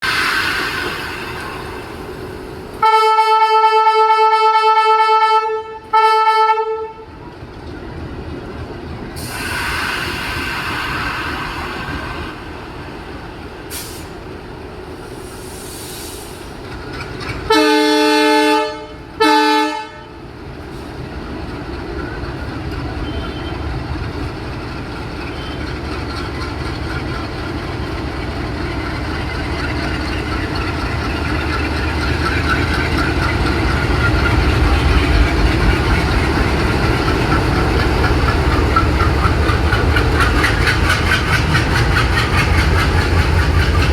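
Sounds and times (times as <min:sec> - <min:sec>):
locomotive horn blasts: 0:02.8 - 0:07.1, 0:17.5 - 0:20.2
locomotive engine rumble: 0:19.9 - 0:43.9.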